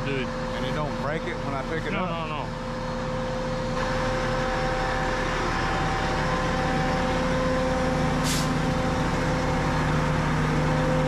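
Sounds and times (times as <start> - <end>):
truck engine running: 0.0 - 11.0.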